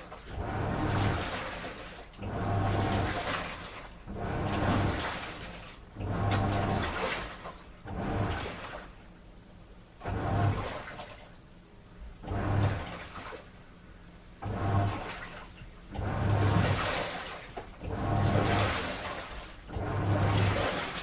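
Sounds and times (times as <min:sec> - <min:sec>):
water sloshing: 0:00.0 - 0:09.2, 0:10.0 - 0:11.4, 0:12.2 - 0:13.7, 0:14.4 - 0:21.0
washing machine drum churning: 0:00.0 - 0:09.3, 0:09.9 - 0:11.3, 0:12.1 - 0:21.0
low motor hum: 0:02.2 - 0:07.0, 0:14.4 - 0:21.0.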